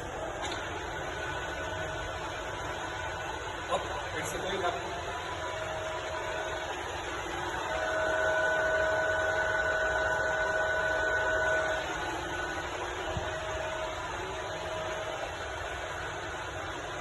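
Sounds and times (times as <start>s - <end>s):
milling machine hum and whine: 0.0s - 17.0s.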